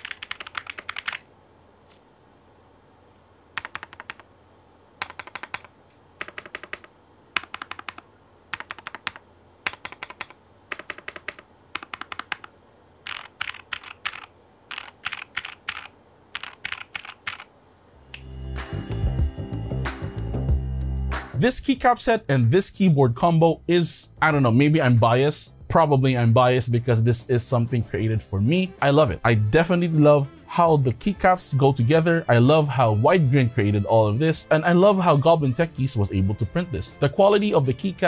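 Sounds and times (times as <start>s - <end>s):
mechanical keyboard typing: 0.0s - 1.3s, 3.5s - 4.3s, 5.0s - 17.5s.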